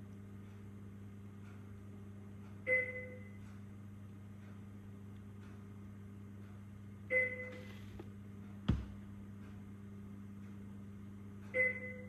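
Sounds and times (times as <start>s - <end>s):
steady electrical hum: 0.0s - 12.0s
sharp knock: 8.7s - 9.0s.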